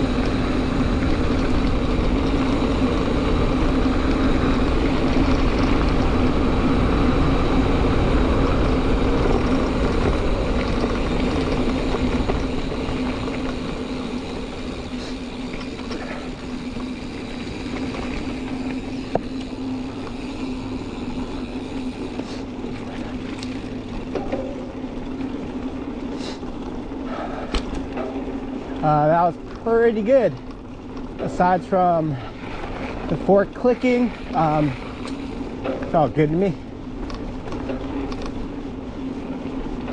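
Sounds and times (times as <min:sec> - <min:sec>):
bike tyre noise on dirt: 0:00.0 - 0:39.9
steady low hum: 0:00.0 - 0:39.9.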